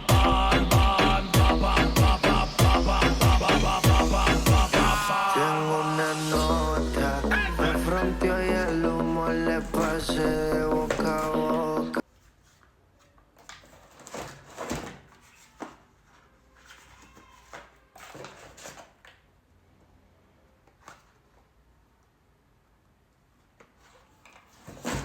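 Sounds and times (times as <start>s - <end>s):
background music: 0.0s - 12.0s
handling rustles and knocks: 12.1s - 19.3s, 23.4s - 25.0s.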